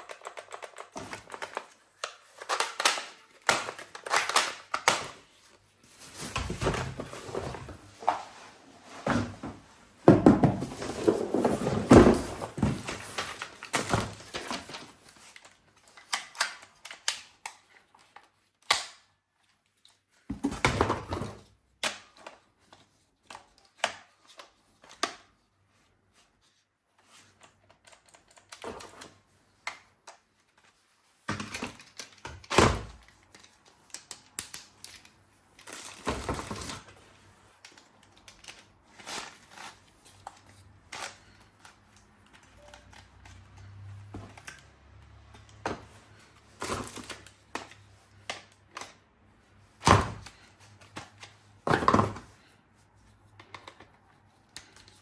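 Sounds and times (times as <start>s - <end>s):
hard objects clicking and knocking: 9.1s - 14.9s.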